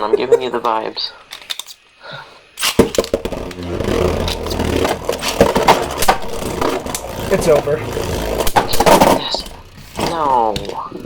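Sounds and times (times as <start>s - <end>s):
spinning tops clacking together: 2.6s - 3.6s
sharp hits: 2.6s - 10.9s
spinning tops humming: 2.6s - 11.0s.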